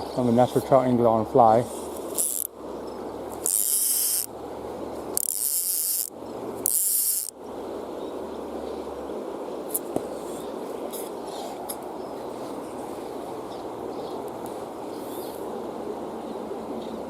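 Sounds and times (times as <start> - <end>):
river rushing: 0.0 - 17.0
fishing reel click drag buzzing: 2.1 - 2.5, 3.4 - 4.3, 5.2 - 7.3.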